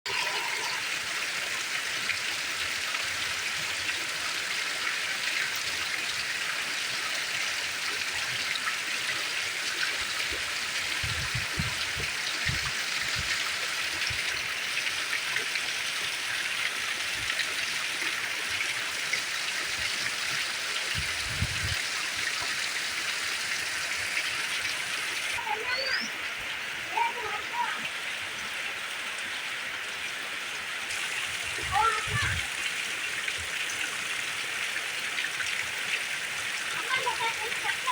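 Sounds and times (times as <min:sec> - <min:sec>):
steady rain hiss: 0:18.0 - 0:37.9.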